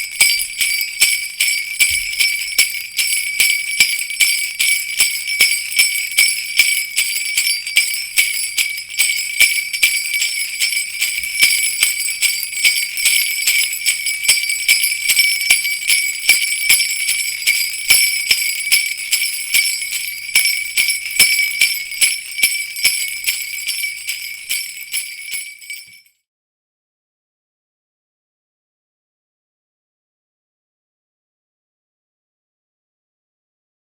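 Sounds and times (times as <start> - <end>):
sleigh bells jingling: 0.0 - 26.1.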